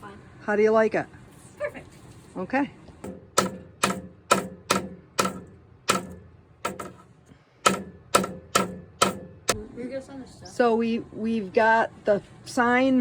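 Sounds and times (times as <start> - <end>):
sharp ringing knocks: 3.0 - 9.6.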